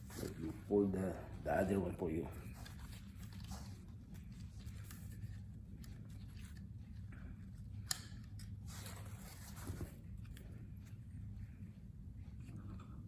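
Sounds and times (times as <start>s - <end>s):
sling rustling and handling: 0.0s - 7.8s, 8.5s - 12.5s
steady low hum: 0.0s - 13.0s.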